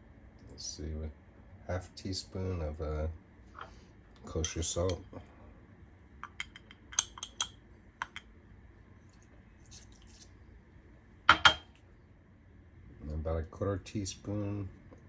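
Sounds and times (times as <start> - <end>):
metal spoons clinking against bowl: 4.3 - 5.1, 6.2 - 8.2.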